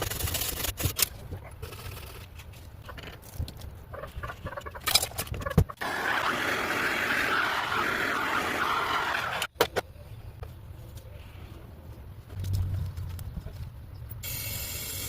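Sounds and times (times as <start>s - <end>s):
torch flame hissing: 5.8s - 9.5s.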